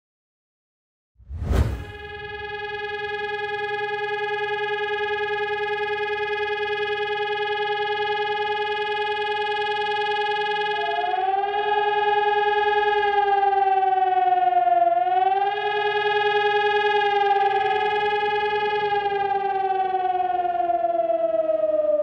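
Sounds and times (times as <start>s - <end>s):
second rising siren tone: 1.3s - 4.4s
warning siren steady tone: 1.9s - 22.0s.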